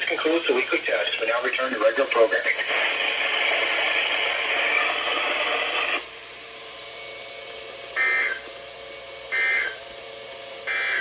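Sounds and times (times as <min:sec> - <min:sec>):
radio static hiss: 0:00.0 - 0:06.1
shrill data tones: 0:08.0 - 0:08.5, 0:09.3 - 0:09.8, 0:10.6 - 0:11.0.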